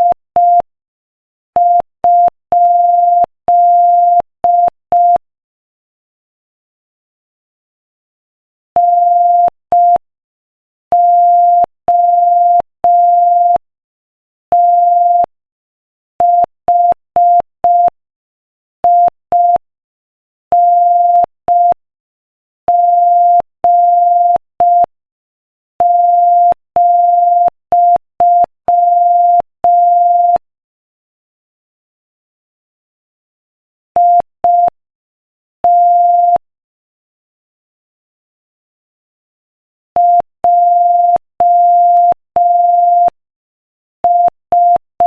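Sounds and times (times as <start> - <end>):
morse code beeps: 22.7 - 24.9, 25.8 - 30.4, 34.0 - 34.8, 35.6 - 36.4, 40.0 - 43.2, 44.0 - 44.9.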